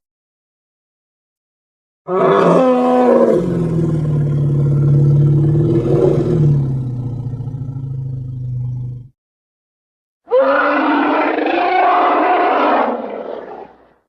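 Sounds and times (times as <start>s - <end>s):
dinosaur roar and growl: 2.1s - 9.1s, 10.3s - 13.9s.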